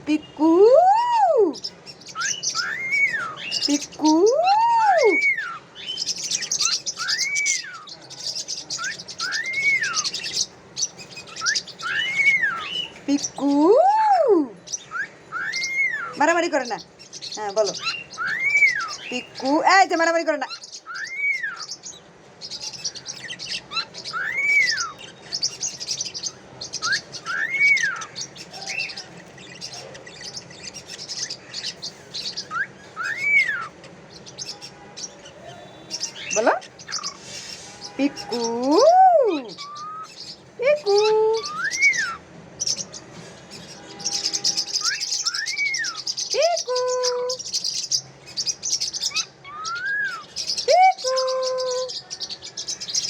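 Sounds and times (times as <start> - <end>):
high chirps and chatter: 0.0 - 53.0
cockatiel whistling: 2.2 - 3.6, 6.6 - 7.9, 8.8 - 10.4, 11.2 - 12.9, 14.8 - 16.2, 17.8 - 19.0, 20.9 - 21.7, 23.6 - 25.2, 26.8 - 28.2, 31.7 - 33.8, 39.6 - 40.2, 41.4 - 42.2, 44.1 - 46.1, 49.0 - 50.4.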